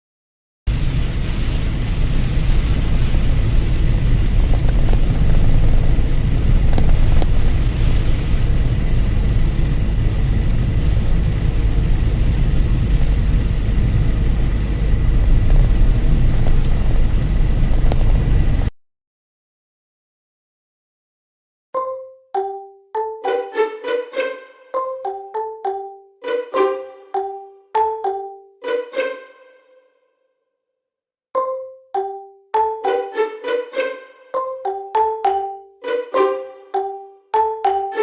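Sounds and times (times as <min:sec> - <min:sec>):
engine and road rumble: 0:00.7 - 0:18.7.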